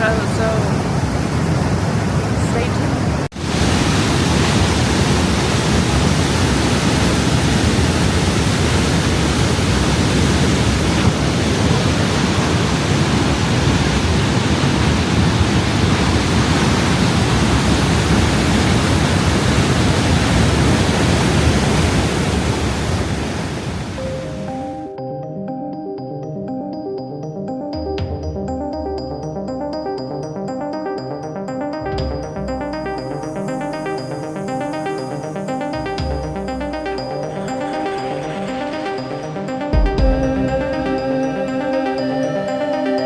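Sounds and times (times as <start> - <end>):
waterfall rushing: 3.4 - 24.7.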